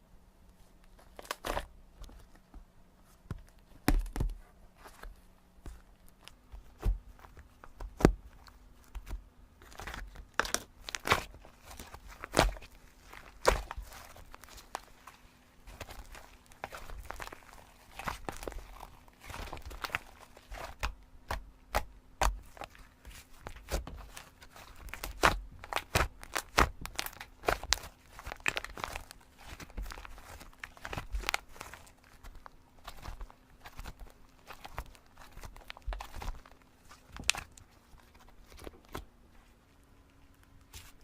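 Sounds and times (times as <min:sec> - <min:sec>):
slime squished by hand: 0:05.6 - 0:39.0.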